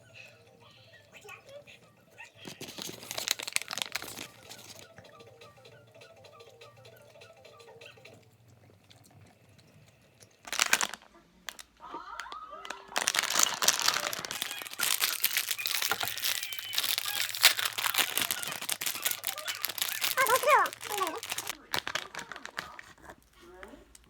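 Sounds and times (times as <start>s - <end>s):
plastic packaging crinkling: 2.2s - 4.9s, 10.4s - 24.0s.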